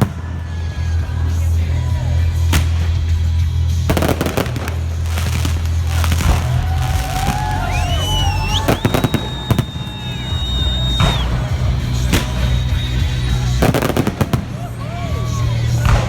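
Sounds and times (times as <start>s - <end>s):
firework whistling: 2.6s - 16.0s
firework shells bursting: 3.9s - 14.7s.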